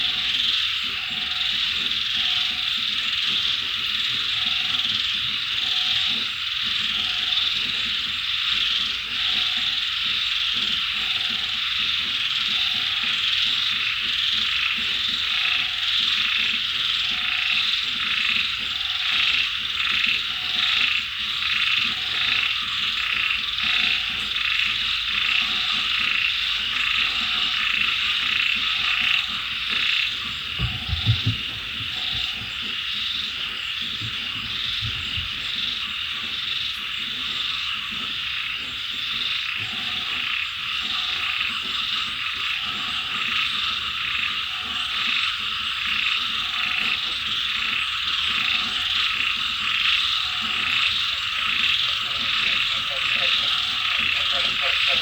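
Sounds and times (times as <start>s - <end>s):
deep low frog croaks: 0.0s - 55.0s
frogs croaking chorus: 0.0s - 55.0s
short repeating frog call: 42.3s - 55.0s.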